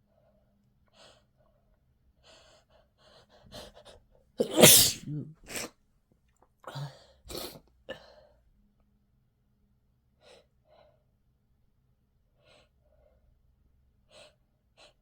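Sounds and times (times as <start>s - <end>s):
person sneezing: 4.4s - 5.7s
soft breaths and sniffs: 14.0s - 15.0s.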